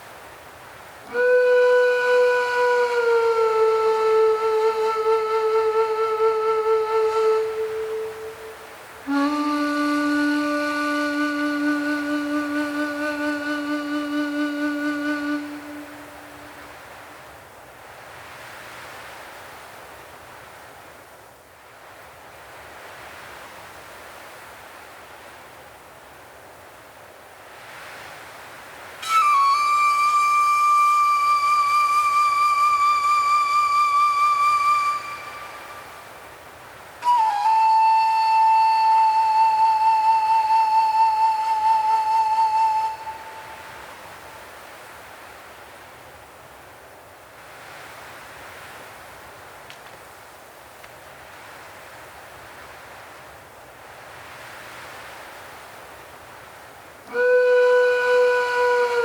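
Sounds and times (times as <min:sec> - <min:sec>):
faint wind hiss: 0:00.0 - 0:59.0
low woodwind note with vibrato: 0:01.1 - 0:16.6, 0:29.0 - 0:36.1, 0:37.0 - 0:44.2, 0:57.1 - 0:59.0.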